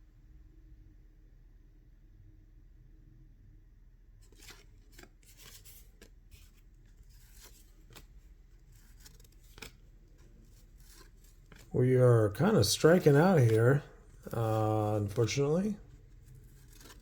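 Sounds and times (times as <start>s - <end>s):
cardboard cards shuffled: 4.2s - 17.0s.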